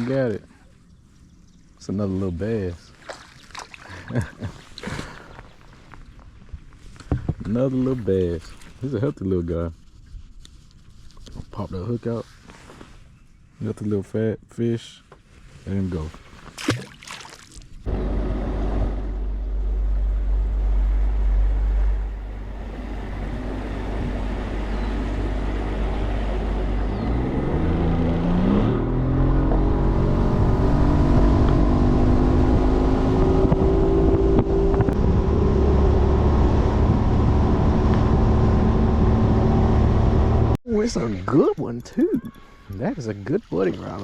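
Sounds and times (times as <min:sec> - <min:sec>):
boat engine rumbling: 0:17.7 - 0:44.0.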